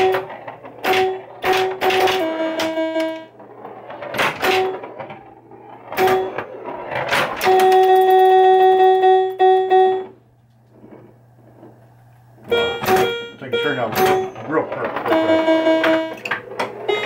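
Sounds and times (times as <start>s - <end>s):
pinball coils knocking: 0.0s - 11.8s, 12.4s - 17.0s
electronic game tones: 7.4s - 10.1s, 12.5s - 14.4s, 15.1s - 16.3s.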